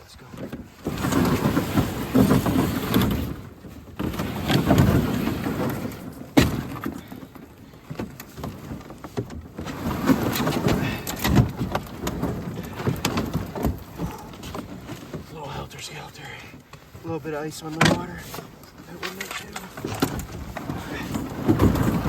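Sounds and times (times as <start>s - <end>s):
knocks against boat hull: 6.3s - 7.1s.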